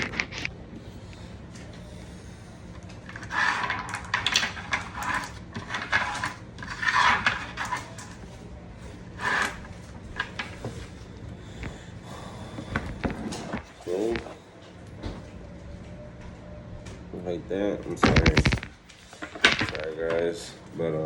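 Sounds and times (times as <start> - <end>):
rifle cartridges clattering: 3.1 - 8.2, 18.0 - 20.3.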